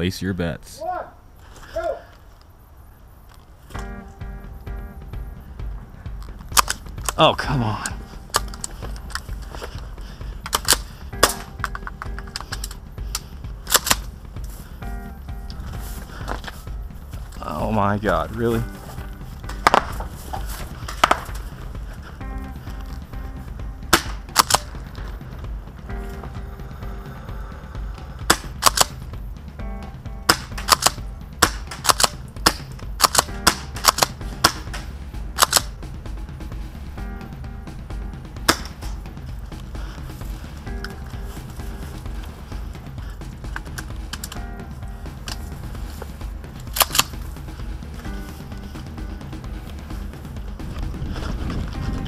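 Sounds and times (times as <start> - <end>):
background music: 2.7 - 52.0
airsoft shotgun shots: 10.5 - 14.1, 19.4 - 21.6, 23.8 - 24.8, 28.2 - 29.0, 30.2 - 35.8, 38.4 - 39.0.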